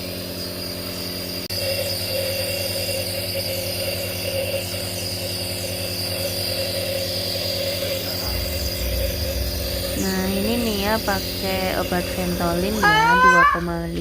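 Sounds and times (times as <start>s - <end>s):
nebulizer compressor humming: 0.0s - 14.0s
low rumble: 7.8s - 14.0s.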